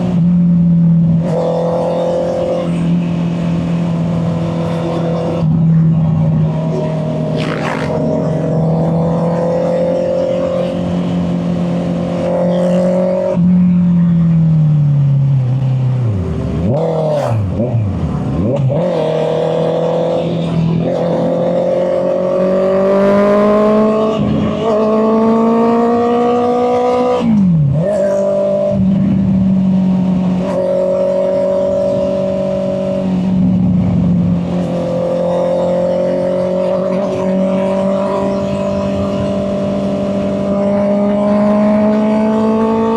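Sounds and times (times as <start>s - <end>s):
motorcycle engine running: 2.6s - 11.8s.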